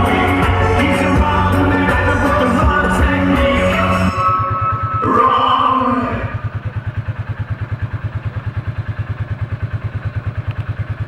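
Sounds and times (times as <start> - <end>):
music: 0.0 - 6.3
small petrol engine idling: 0.0 - 11.0.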